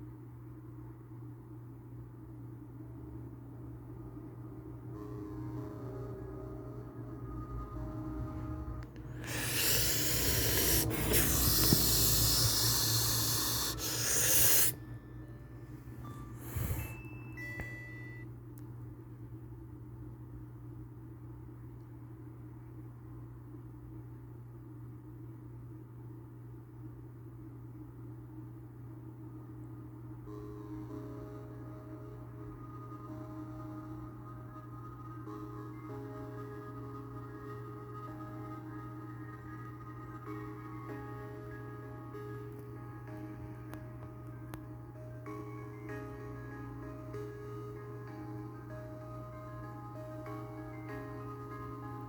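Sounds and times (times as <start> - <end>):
steady low hum: 0.0 - 52.0
loud hiss from phone speaker: 9.1 - 14.8, 16.3 - 17.0
phone ringtone: 14.8 - 18.2.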